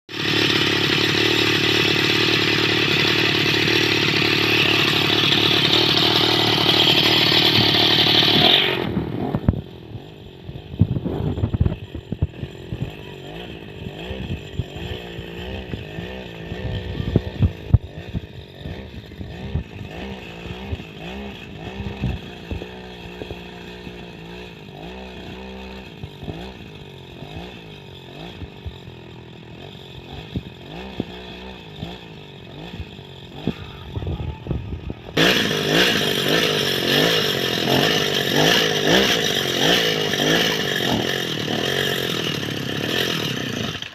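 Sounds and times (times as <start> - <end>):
toy truck motor whining: 30.7 - 43.9.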